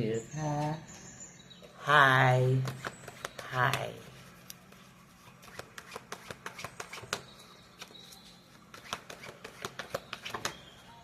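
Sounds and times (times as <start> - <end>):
cards being shuffled: 2.7 - 7.2, 7.8 - 10.6.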